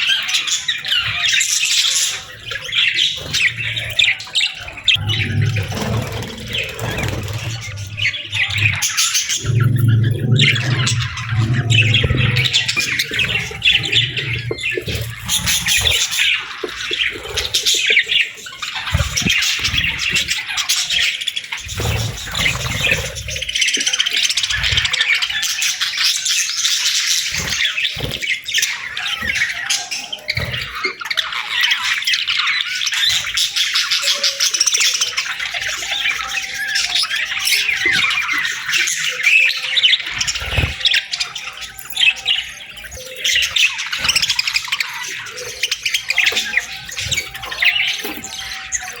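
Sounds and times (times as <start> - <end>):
budgerigars chattering: 0.0 - 49.0
low thumps: 5.0 - 15.6.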